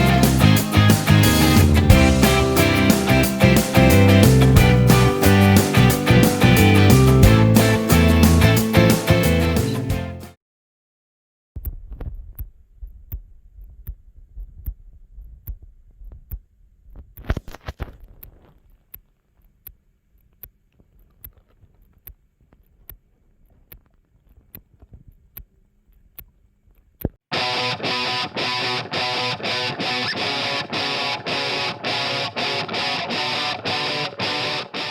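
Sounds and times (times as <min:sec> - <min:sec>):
guitar music: 0:00.0 - 0:10.3, 0:27.3 - 0:34.9.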